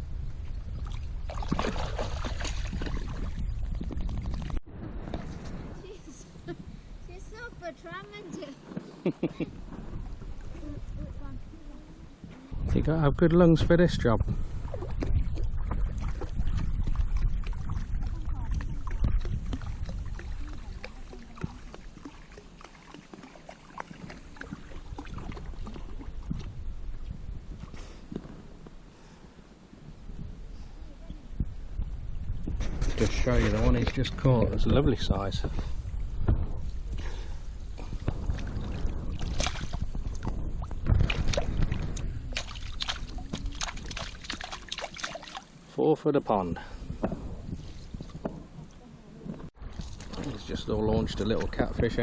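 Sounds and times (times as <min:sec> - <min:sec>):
river water splashing and dripping: 0:00.3 - 0:06.2, 0:14.5 - 0:29.7, 0:35.5 - 0:45.7, 0:49.5 - 0:52.0.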